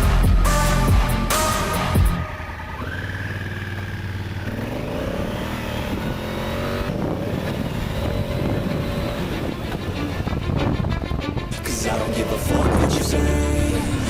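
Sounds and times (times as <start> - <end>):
motorcycle engine revving: 0.0 - 10.9.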